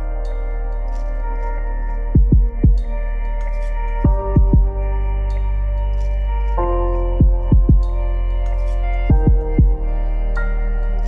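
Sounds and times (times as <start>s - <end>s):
held synth chords: 0.0s - 11.0s
deep falling drum beats: 2.2s - 2.8s, 4.1s - 4.8s, 7.2s - 7.9s, 9.1s - 9.8s.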